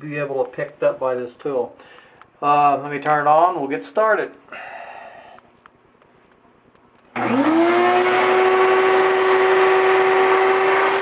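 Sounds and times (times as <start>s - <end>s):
shop vacuum motor running: 7.1s - 11.0s.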